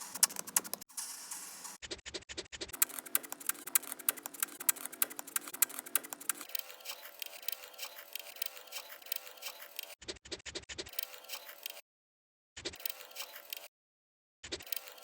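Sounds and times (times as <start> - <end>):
rapid clicks: 0.0 - 1.8, 2.7 - 10.0.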